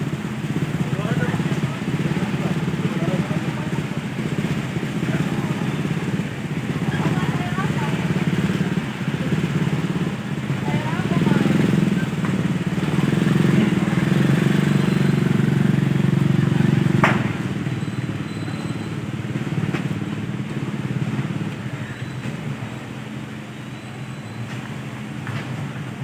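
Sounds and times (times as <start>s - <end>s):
engine running: 0.0s - 26.0s.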